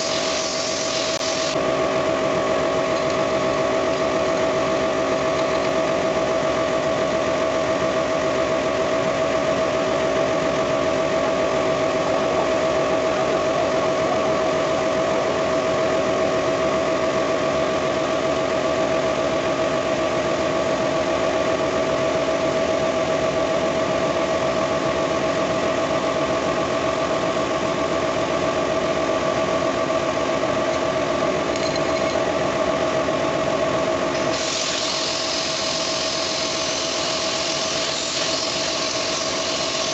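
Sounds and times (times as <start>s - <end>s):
hiss: 0.0s - 1.6s, 34.2s - 39.9s
machine hum and mechanical rattle: 0.0s - 39.9s.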